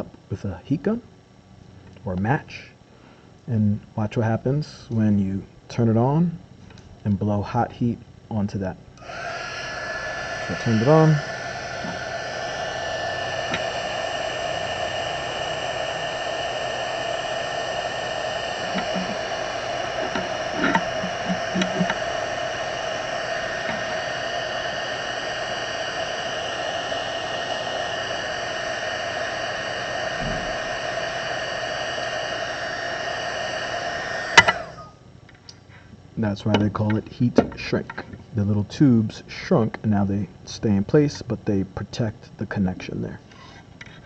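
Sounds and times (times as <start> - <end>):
heat gun blower hiss: 0.0 - 1.0, 7.2 - 44.0.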